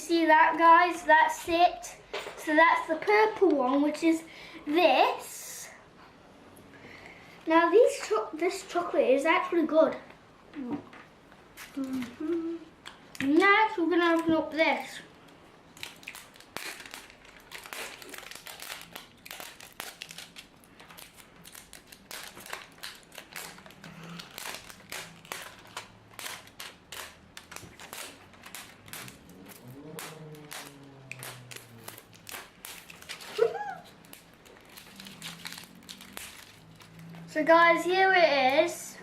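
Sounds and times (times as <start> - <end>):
plastic packaging crinkling: 14.0 - 37.3
short vocal sound: 29.5 - 31.9.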